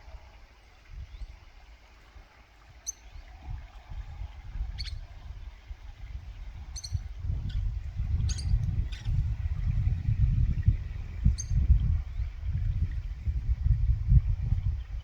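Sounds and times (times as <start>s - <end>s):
steady low rumble: 3.2s - 15.0s.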